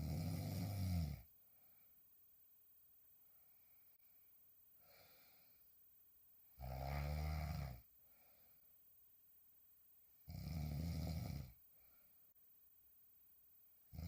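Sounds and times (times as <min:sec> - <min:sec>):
woman snoring: 0:00.0 - 0:01.3, 0:06.6 - 0:07.8, 0:10.3 - 0:11.6.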